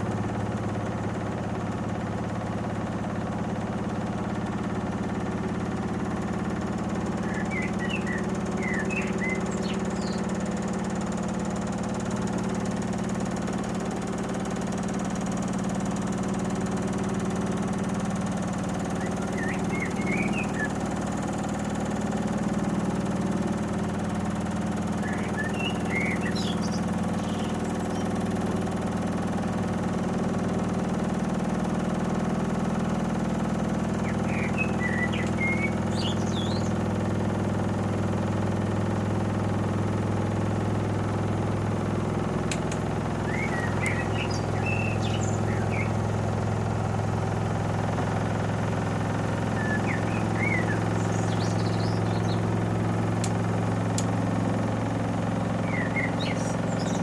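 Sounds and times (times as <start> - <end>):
washing machine spinning: 0.0 - 57.0
birds chirping: 5.8 - 29.8, 32.8 - 37.8, 40.0 - 46.6, 49.2 - 57.0.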